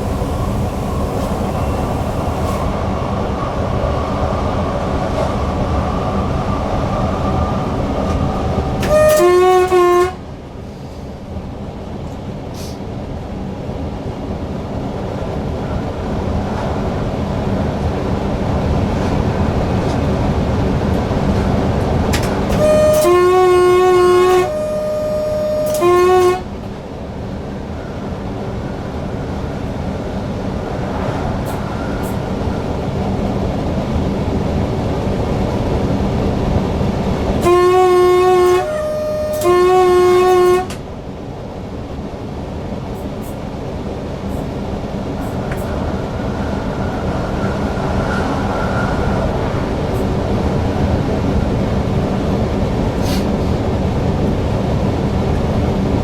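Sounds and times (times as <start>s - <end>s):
train wheel and rail noise: 0.0s - 56.0s
two-tone train horn: 8.8s - 10.3s, 22.2s - 26.7s, 37.4s - 40.8s.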